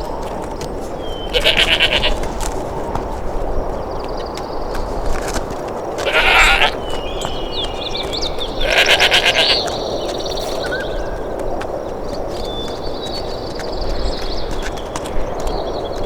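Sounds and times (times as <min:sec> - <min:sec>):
hiss of wild ambience: 0:00.0 - 0:16.0
animal calling: 0:01.0 - 0:02.5, 0:06.0 - 0:11.4
bird chirps: 0:06.1 - 0:11.4.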